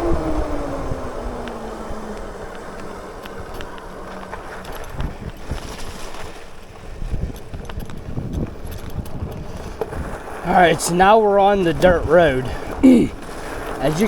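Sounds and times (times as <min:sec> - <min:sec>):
electric motor whine: 0:00.0 - 0:05.3
electric bike rumbling over rough ground: 0:00.0 - 0:14.0
wind buffeting microphone: 0:00.0 - 0:14.0.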